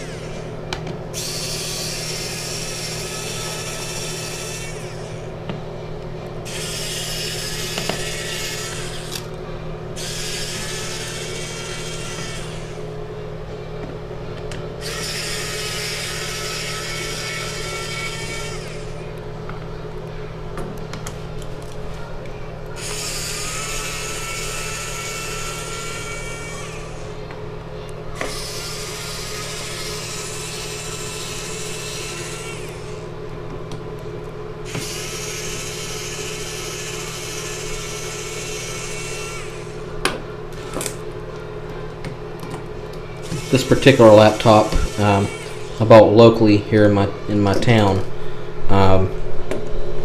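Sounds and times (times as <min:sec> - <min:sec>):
electric screwdriver running: 0:01.2 - 0:05.1, 0:10.0 - 0:12.8, 0:14.8 - 0:18.9, 0:28.2 - 0:33.0, 0:34.7 - 0:39.8, 0:43.2 - 0:45.8.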